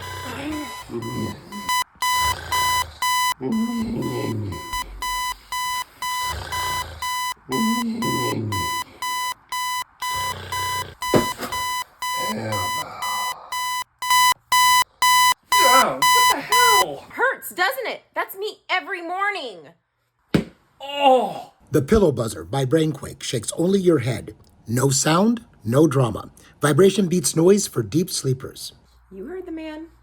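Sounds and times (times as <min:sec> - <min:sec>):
person snoring: 0:00.0 - 0:05.6, 0:06.2 - 0:09.0, 0:10.1 - 0:11.0, 0:12.2 - 0:13.6
alarm clock beeping: 0:00.0 - 0:16.9.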